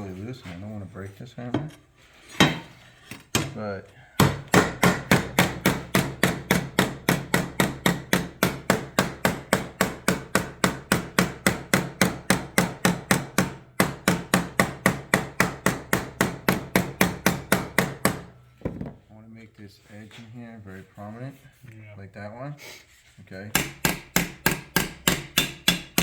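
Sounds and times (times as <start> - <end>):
hammer striking sheet metal: 23.6 - 26.0.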